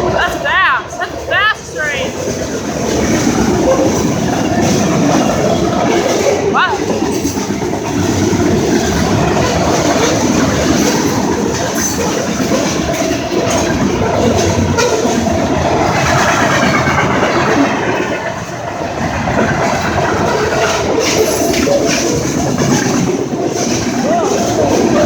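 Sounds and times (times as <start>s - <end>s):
freight train rolling past: 0.0s - 25.0s.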